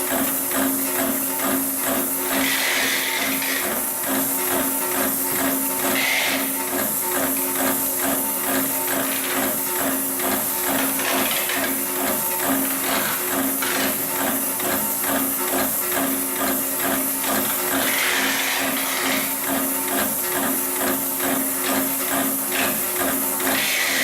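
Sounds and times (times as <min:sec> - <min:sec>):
sewing machine stitching rope: 0:17.5 - 0:19.5.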